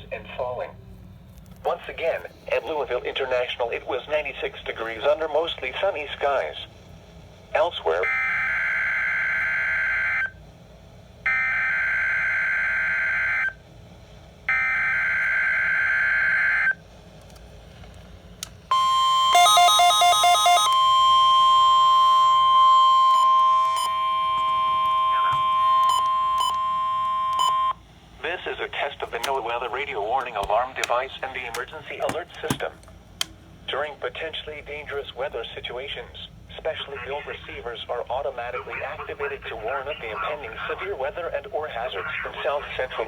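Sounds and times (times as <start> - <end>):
piercing warning alarm tone: 7.9 - 10.4, 11.2 - 13.6, 14.5 - 16.8, 18.7 - 27.8
buzzing digital header tones: 18.7 - 27.8
fast beeps: 18.7 - 27.8.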